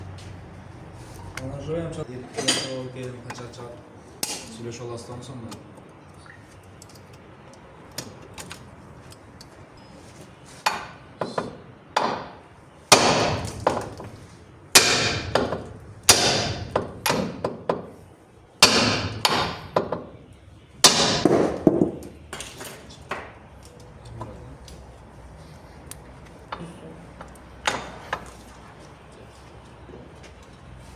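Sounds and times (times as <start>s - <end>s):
hammer striking steel: 10.6s - 14.0s, 14.7s - 17.9s, 18.6s - 20.1s, 20.8s - 23.3s.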